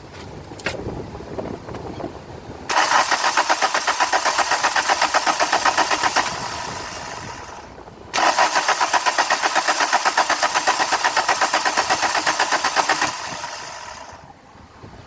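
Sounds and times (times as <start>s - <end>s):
starter cranking engine: 2.7s - 14.3s.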